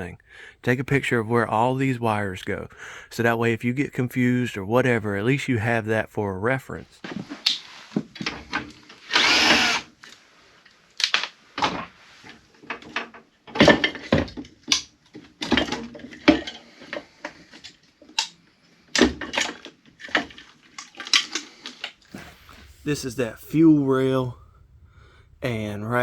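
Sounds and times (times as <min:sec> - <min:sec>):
power drill running: 0:09.0 - 0:09.9.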